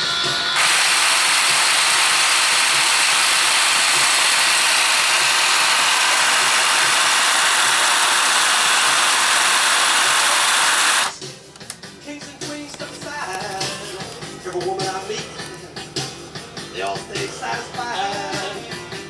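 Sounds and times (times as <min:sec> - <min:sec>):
small motor whirring: 0:00.6 - 0:11.2.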